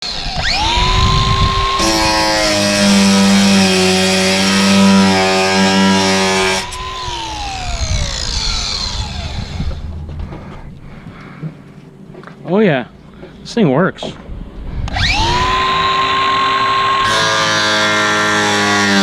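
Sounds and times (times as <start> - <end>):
angle grinder on metal: 0.0 - 9.9, 14.9 - 19.0.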